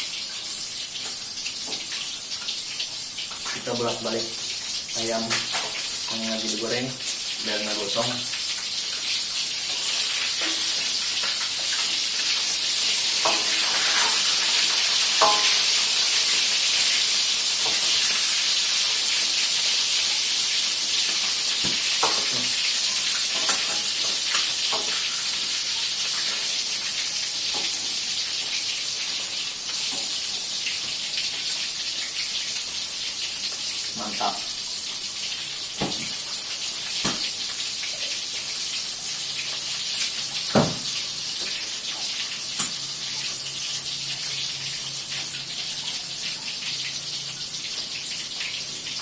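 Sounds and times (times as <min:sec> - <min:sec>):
chicken frying in hot oil: 0:00.0 - 0:49.0
utensil scraping a pan: 0:13.2 - 0:15.9.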